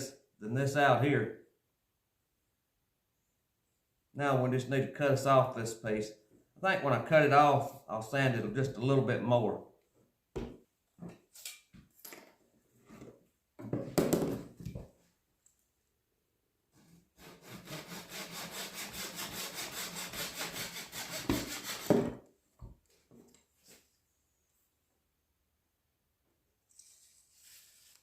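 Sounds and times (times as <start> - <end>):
handsaw cutting wood: 16.8 - 22.1.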